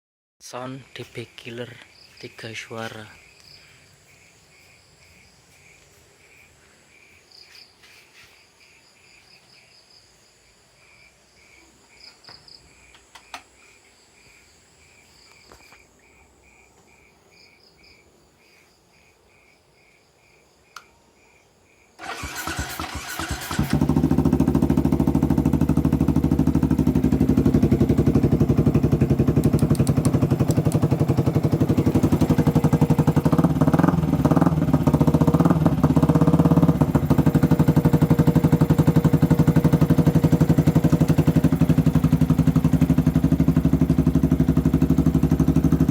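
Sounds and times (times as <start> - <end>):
crickets chirping: 0.4 - 23.7
motorcycle engine starting and idling: 22.0 - 45.9.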